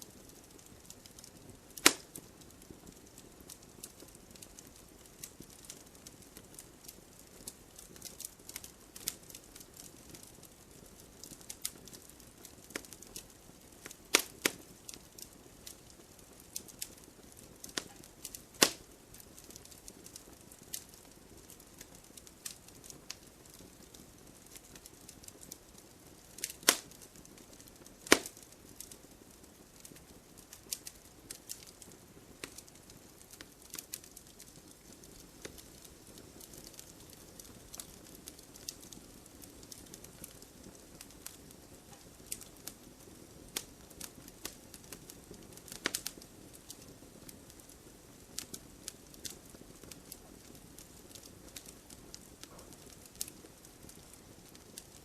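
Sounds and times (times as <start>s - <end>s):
campfire crackling: 0.0s - 55.0s
sharp pops from fire: 0.0s - 55.0s.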